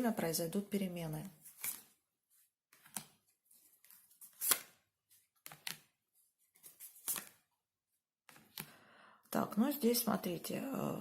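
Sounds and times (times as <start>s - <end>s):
cards slapping on table: 4.3s - 4.8s, 5.4s - 5.9s.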